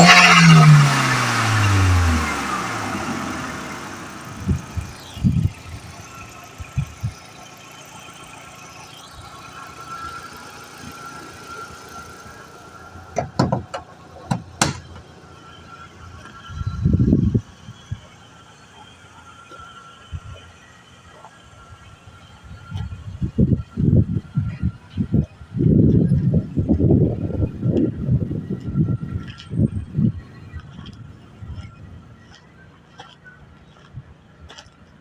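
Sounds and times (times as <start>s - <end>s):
car engine coming off throttle: 0.0s - 32.4s
short thumps: 13.1s - 15.1s.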